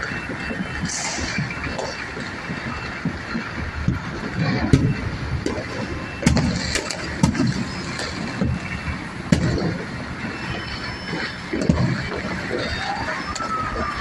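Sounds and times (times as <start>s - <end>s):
fireworks bangs: 0.0s - 14.0s
faint high whistles: 10.3s - 11.4s, 12.4s - 14.0s.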